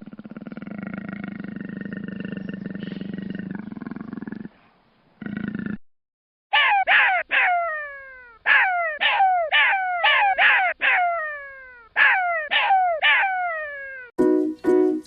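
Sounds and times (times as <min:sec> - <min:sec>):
animal harsh descending calls: 0:06.5 - 0:14.1.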